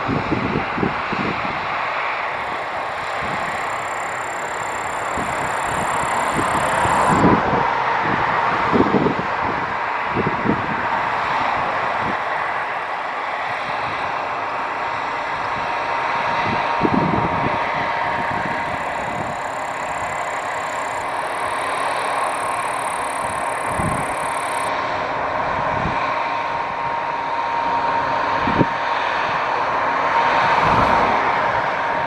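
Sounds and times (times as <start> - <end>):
combine harvester running: 0.0 - 32.0
constant high whine: 0.0 - 32.0.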